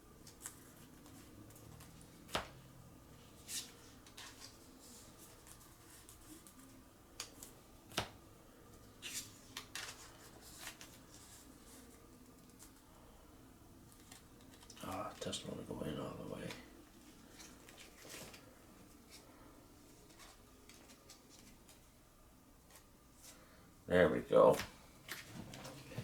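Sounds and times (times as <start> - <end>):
plastic sleeves rustling: 16.1 - 21.9.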